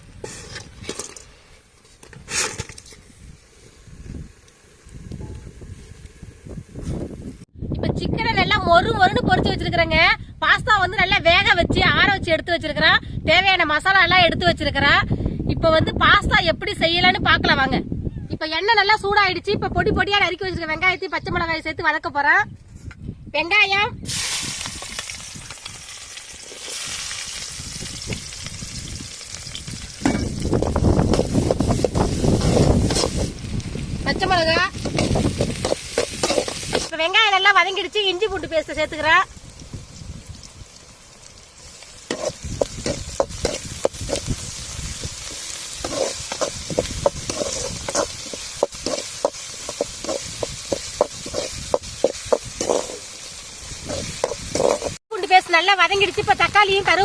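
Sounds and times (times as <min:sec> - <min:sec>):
spoon stirring and scraping pan: 0:00.1 - 0:03.3, 0:31.1 - 0:33.3, 0:34.8 - 0:36.9, 0:42.0 - 0:55.0
onions sizzling in oil: 0:24.1 - 0:57.0
stirring clicks: 0:45.3 - 0:53.1.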